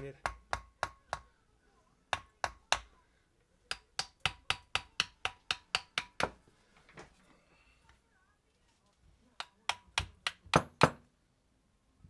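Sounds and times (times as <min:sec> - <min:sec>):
hammer tapping metal: 0:00.0 - 0:01.3, 0:03.7 - 0:06.4.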